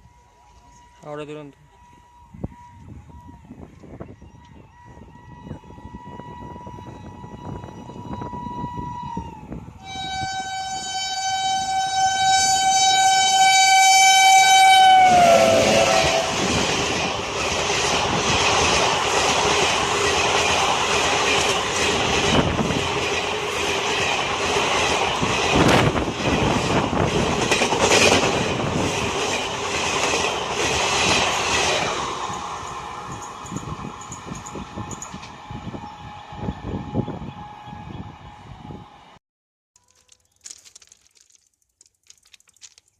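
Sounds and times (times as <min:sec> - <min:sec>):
train horn blast: 0:04.7 - 0:16.9, 0:34.6 - 0:38.9
train wheels clattering over rails: 0:16.2 - 0:35.4.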